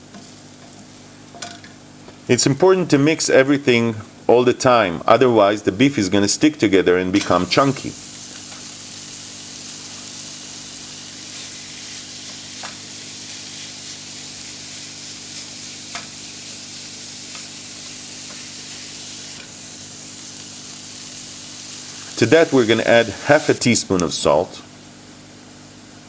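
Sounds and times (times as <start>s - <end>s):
meat sizzling in a pan: 7.2s - 23.6s.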